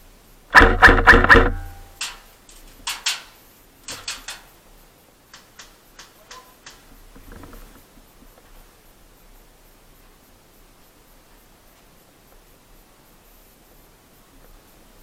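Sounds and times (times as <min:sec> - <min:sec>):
sharp clicks and snaps: 0:00.6 - 0:04.5, 0:05.3 - 0:07.6.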